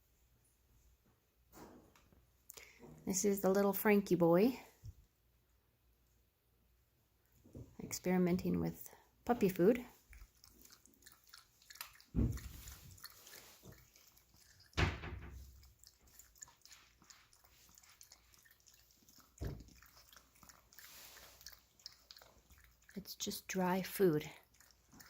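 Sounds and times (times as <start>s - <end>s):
puppy crunching dry kibble: 9.3s - 14.8s, 15.4s - 23.6s.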